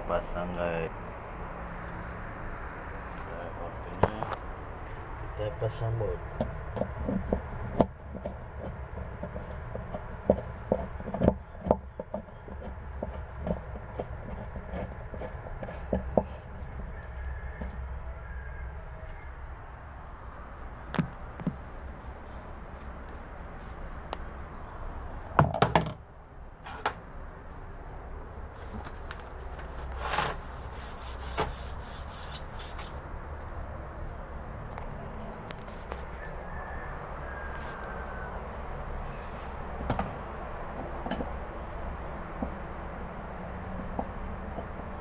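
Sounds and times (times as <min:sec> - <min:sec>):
steady low hum: 0:00.0 - 0:25.4
washing machine parts knocking: 0:06.4 - 0:16.4, 0:25.4 - 0:26.0.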